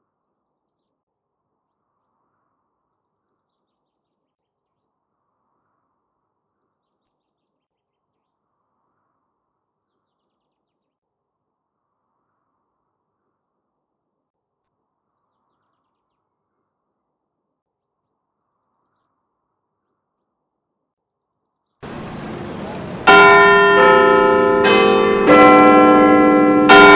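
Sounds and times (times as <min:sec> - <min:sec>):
faint bird song: 0:00.0 - 0:11.0, 0:14.5 - 0:17.0, 0:17.7 - 0:23.0.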